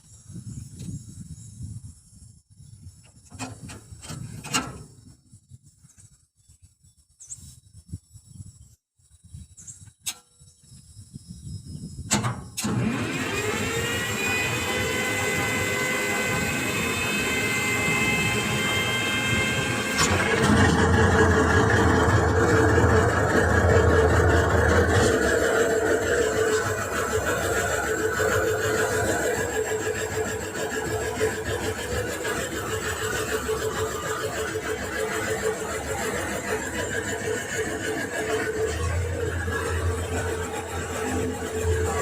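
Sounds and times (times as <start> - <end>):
construction machine engine: 12.1 - 42.0
high whine: 12.6 - 42.0.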